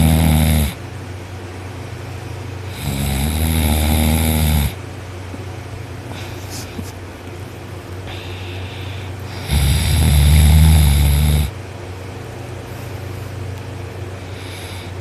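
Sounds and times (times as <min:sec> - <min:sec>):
person snoring loudly: 0:00.0 - 0:00.8, 0:02.7 - 0:04.8, 0:09.3 - 0:11.6
steady low hum: 0:00.0 - 0:15.0
breath: 0:06.1 - 0:06.7, 0:08.0 - 0:09.7, 0:14.2 - 0:15.0.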